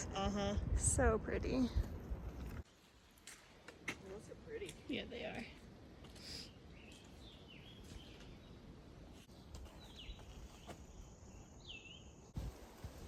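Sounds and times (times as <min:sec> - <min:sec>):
songbird chirping: 0:03.3 - 0:12.4.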